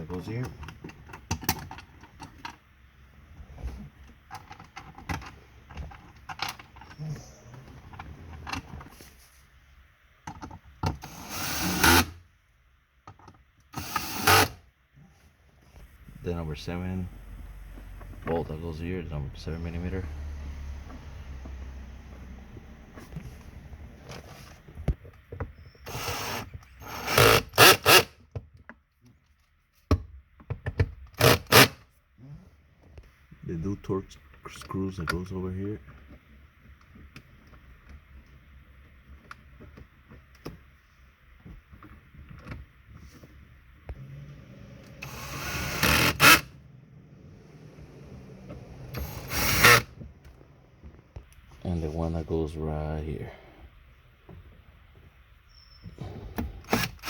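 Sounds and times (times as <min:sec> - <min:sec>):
power driver running: 0:25.9 - 0:28.1, 0:43.9 - 0:50.5, 0:56.3 - 0:57.0.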